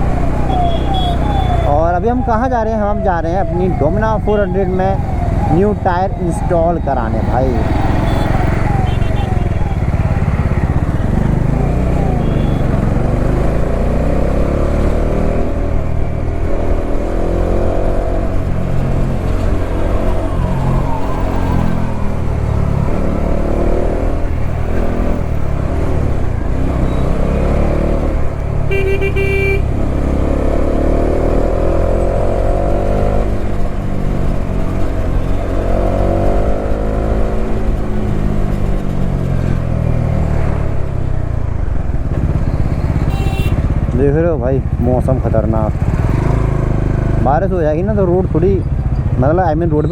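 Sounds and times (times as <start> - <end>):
motorcycle engine revving: 0.0 - 49.9
vehicle horn honk: 0.5 - 1.6, 8.9 - 9.6, 12.2 - 12.8, 28.7 - 29.7, 43.0 - 43.7.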